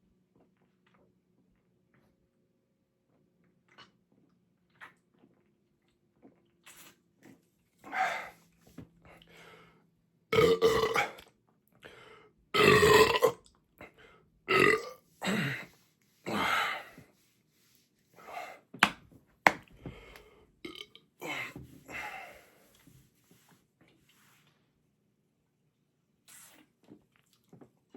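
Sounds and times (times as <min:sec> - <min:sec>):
man belching: 0:10.4 - 0:11.2, 0:12.6 - 0:13.4, 0:14.5 - 0:15.4, 0:20.7 - 0:21.0.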